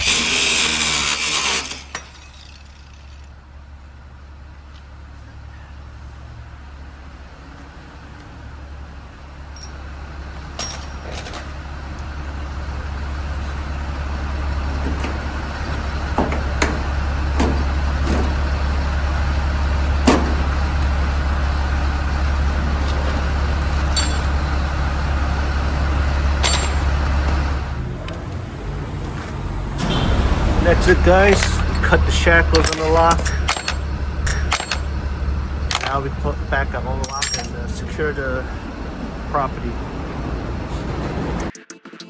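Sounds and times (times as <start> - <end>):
angle grinder cutting metal: 0.0 - 3.2
sharp clicks and ticks: 30.6 - 37.6.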